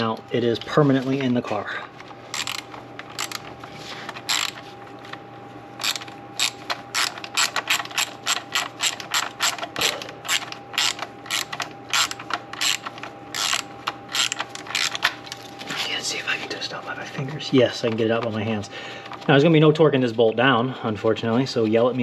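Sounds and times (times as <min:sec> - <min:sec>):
hand ratchet clicking: 0:02.3 - 0:03.4, 0:04.2 - 0:04.6, 0:05.8 - 0:15.1.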